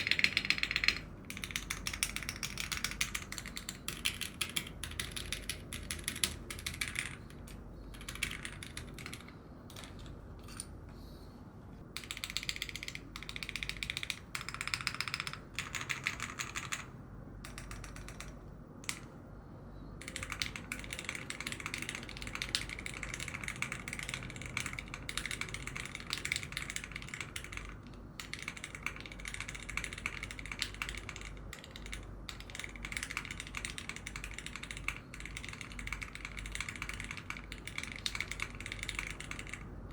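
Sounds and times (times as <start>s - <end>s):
mechanical keyboard typing: 0.0s - 10.1s, 12.0s - 19.1s, 20.0s - 39.9s.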